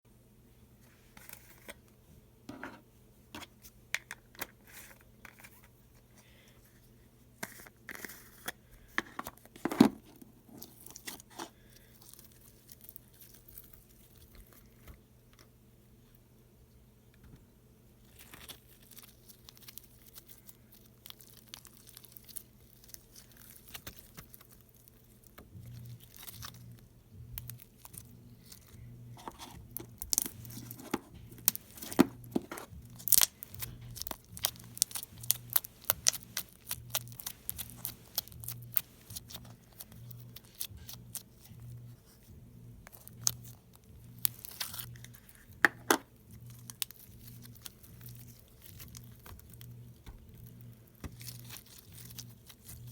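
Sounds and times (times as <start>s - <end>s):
slime crackling and popping: 18.1s - 28.8s, 29.7s - 30.8s, 31.4s - 41.5s, 42.8s - 45.2s, 46.3s - 52.9s.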